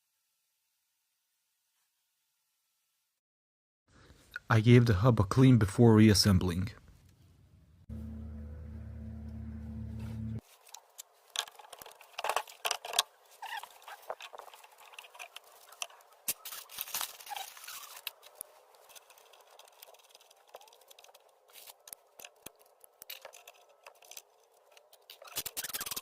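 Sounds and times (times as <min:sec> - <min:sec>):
steady low hum: 0:07.8 - 0:10.4
scratching and scraping wheel hub: 0:09.9 - 0:26.0.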